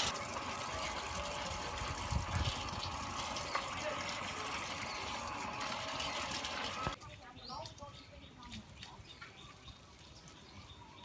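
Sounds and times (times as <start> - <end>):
water rushing: 0.0 - 7.0.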